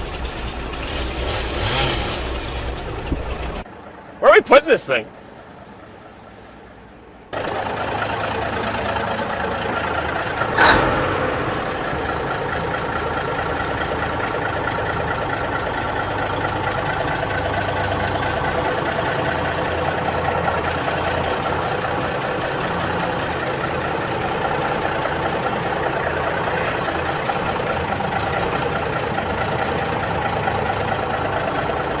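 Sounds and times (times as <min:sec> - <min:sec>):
engine running: 0:00.0 - 0:04.2, 0:05.1 - 0:32.0.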